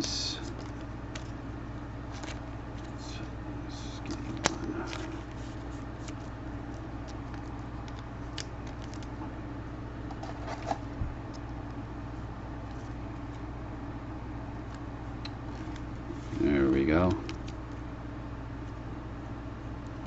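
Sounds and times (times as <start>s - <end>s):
low background hum: 0.0s - 20.0s
cards rustling: 0.4s - 9.2s, 10.0s - 11.4s.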